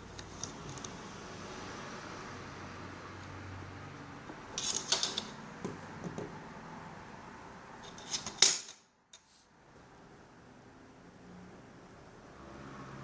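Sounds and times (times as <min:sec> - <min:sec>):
clicks and scrapes of laptop parts: 0:04.4 - 0:06.4, 0:07.8 - 0:09.4.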